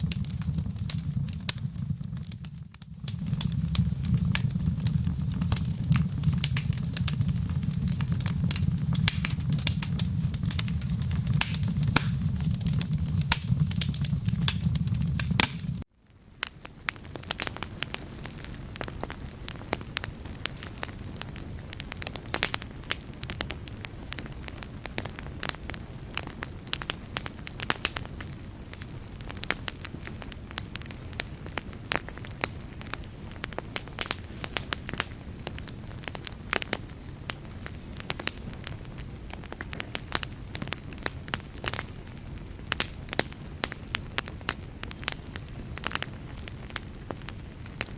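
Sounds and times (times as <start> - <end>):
low rumble: 0.0 - 15.8
wood fire crackling: 0.0 - 47.9.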